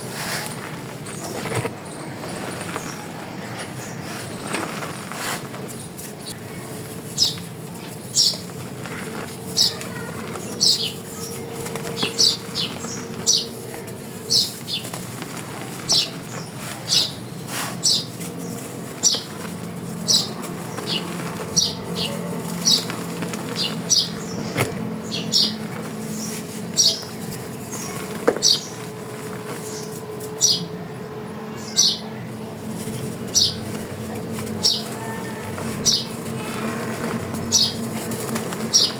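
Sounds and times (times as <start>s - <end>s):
chalk crunching: 32.6s - 38.9s.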